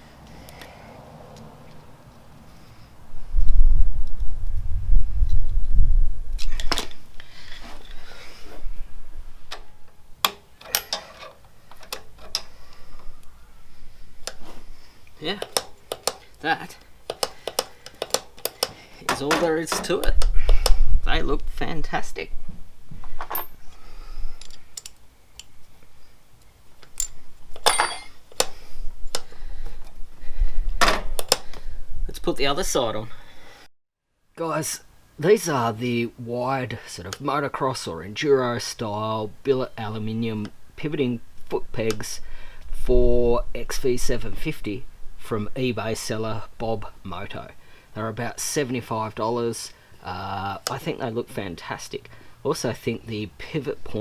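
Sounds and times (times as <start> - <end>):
low rumble: 3.0 - 6.4
metal tools clinking: 10.6 - 12.6, 23.3 - 23.7, 27.0 - 28.5
metallic clicks and clinks: 26.8 - 28.5.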